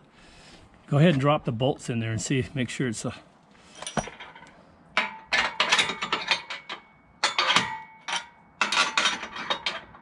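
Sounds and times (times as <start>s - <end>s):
bolts clinking on metal: 3.7s - 10.0s.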